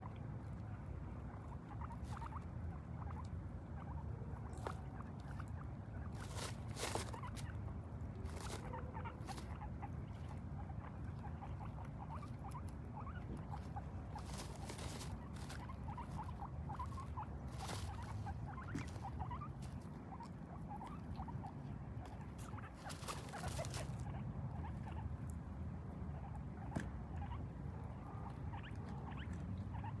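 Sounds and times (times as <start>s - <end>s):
guinea pigs chutting: 0.0s - 30.0s
rustling: 3.0s - 25.0s.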